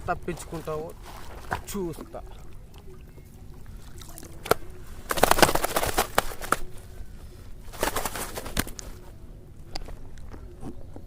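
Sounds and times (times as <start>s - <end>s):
fish thrashing in water: 2.3s - 6.8s.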